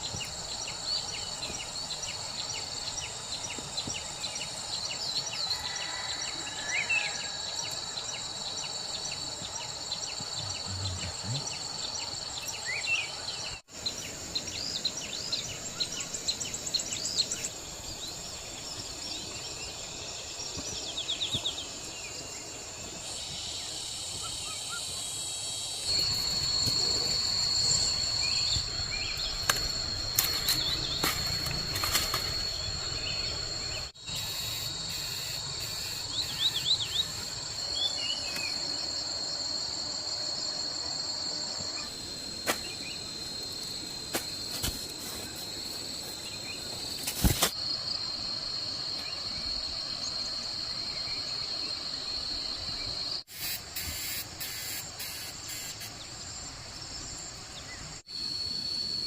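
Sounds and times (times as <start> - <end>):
insects droning: 0.0 - 59.0.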